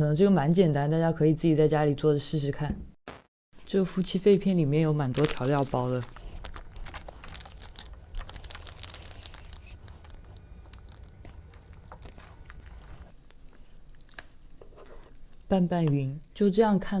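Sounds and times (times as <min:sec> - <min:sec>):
plastic sachets crinkling and tearing: 0:04.8 - 0:15.4.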